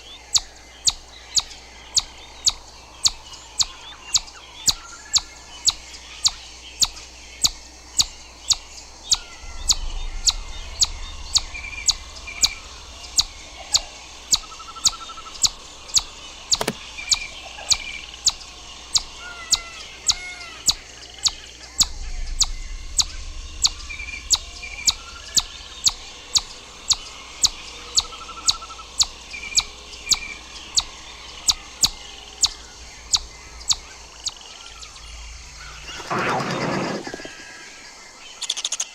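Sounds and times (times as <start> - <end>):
birds calling softly: 0.0 - 38.9
chipmunk chip call: 14.3 - 21.4.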